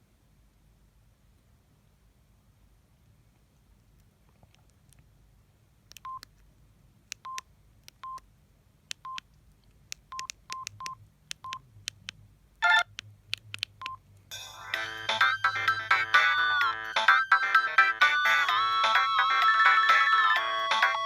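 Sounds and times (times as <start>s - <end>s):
phone key clicks and beeps: 5.9s - 6.3s, 7.1s - 8.2s, 8.9s - 9.2s, 9.9s - 14.0s
polyphonic ringtone: 14.3s - 21.0s.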